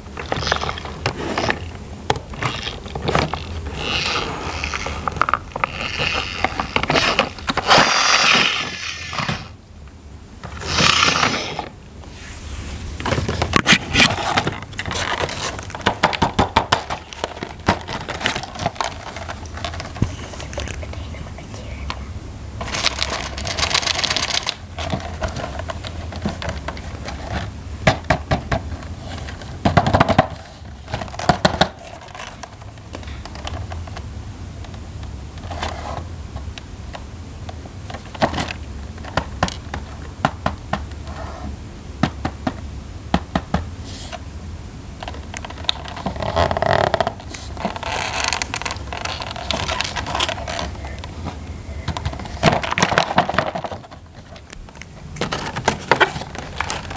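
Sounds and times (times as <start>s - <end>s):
plastic parts clattering: 0.0s - 9.5s, 13.0s - 21.0s, 22.6s - 34.0s, 45.0s - 56.9s
packaging rustling: 12.9s - 21.1s, 22.6s - 27.5s, 45.0s - 56.9s
plastic parts clicking and tapping: 46.9s - 56.9s.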